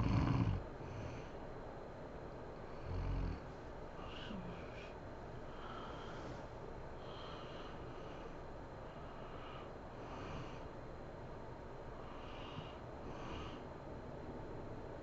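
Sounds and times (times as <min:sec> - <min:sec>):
woman snoring: 0:00.0 - 0:01.2, 0:02.8 - 0:03.4, 0:04.0 - 0:04.9
steady background hiss: 0:00.0 - 0:15.0.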